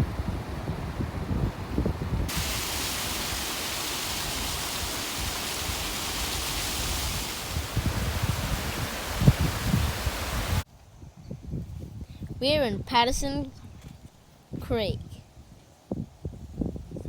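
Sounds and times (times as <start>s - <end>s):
wind buffeting microphone: 0.0s - 17.0s
waterfall rushing hiss: 2.3s - 10.6s.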